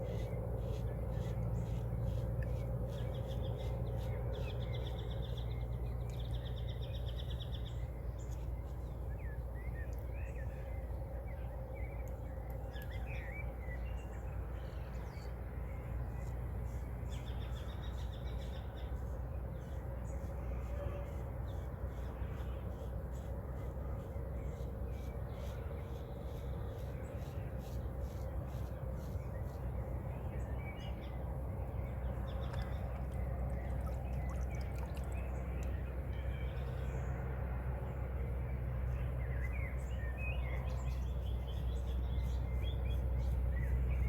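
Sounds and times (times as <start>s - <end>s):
birds singing: 0.0s - 44.0s
low hum: 0.0s - 44.0s.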